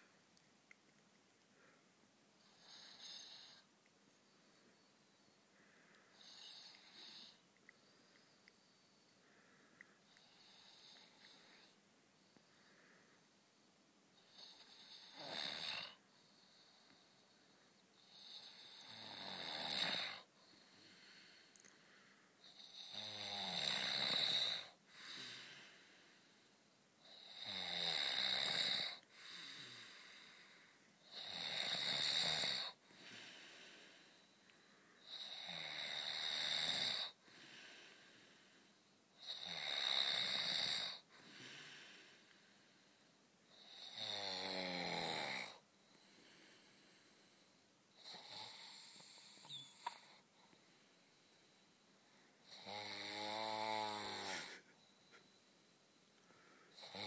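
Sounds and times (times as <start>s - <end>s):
quiet breaths: 0.0s - 57.0s
man snoring heavily: 6.2s - 7.4s, 14.2s - 16.0s, 18.0s - 20.3s, 22.5s - 26.0s, 27.0s - 34.2s, 35.0s - 38.5s, 39.2s - 42.2s, 43.5s - 45.6s, 48.0s - 50.2s, 52.4s - 54.7s, 56.7s - 57.0s.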